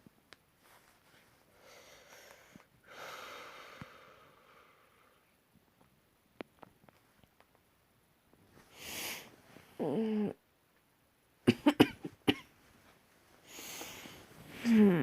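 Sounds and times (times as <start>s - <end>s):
person breathing heavily: 1.5s - 5.3s, 8.7s - 9.3s, 13.4s - 14.7s.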